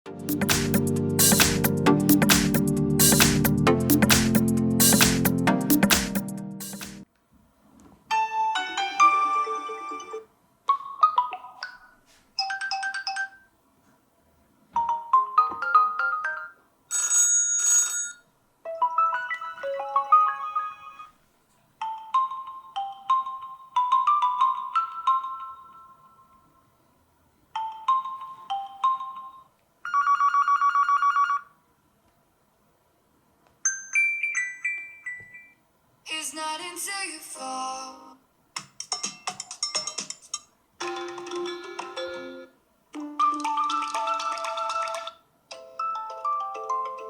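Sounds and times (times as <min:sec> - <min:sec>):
electronic ringtone melodies: 0:00.2 - 0:06.9, 0:14.8 - 0:21.2, 0:21.8 - 0:26.4, 0:27.6 - 0:31.5, 0:40.8 - 0:47.0
fast repeating trill: 0:00.2 - 0:07.0.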